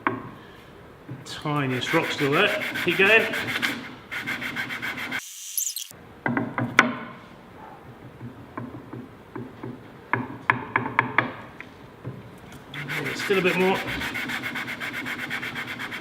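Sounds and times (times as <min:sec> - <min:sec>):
wood rubbing on sandpaper: 0:01.5 - 0:05.9, 0:12.8 - 0:16.0.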